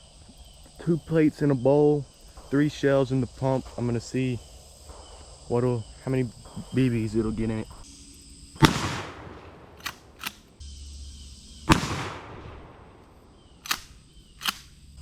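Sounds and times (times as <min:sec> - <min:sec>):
crickets chirping: 0:00.0 - 0:15.0
shotgun shots echoing: 0:08.6 - 0:10.6, 0:11.7 - 0:14.8
shotgun pump clacking: 0:09.8 - 0:10.5, 0:13.6 - 0:14.8.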